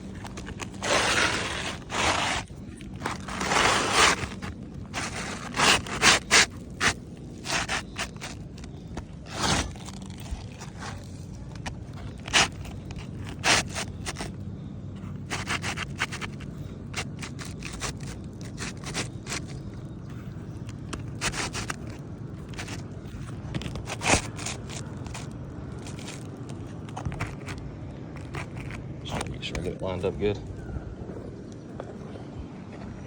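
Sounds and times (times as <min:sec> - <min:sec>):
roofing shingles scraping: 0:00.0 - 0:14.4, 0:15.0 - 0:27.6, 0:28.2 - 0:29.8.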